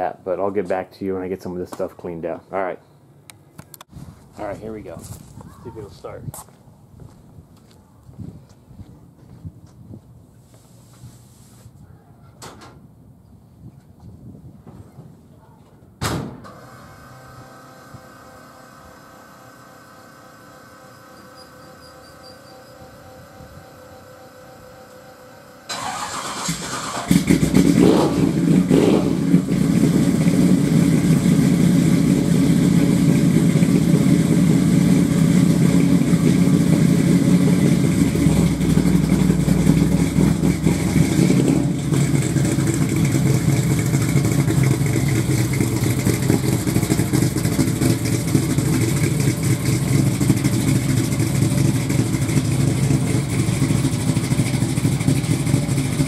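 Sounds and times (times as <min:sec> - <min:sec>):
engine cranking and starting: 0:25.7 - 0:29.1
engine revving and idling: 0:25.7 - 0:56.0.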